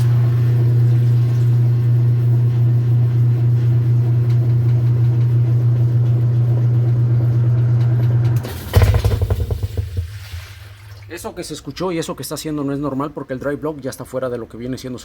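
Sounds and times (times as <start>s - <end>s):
washing machine motor humming: 0.0s - 11.8s
washer brake clunk: 7.6s - 10.7s
washer tub rattling: 8.5s - 11.6s.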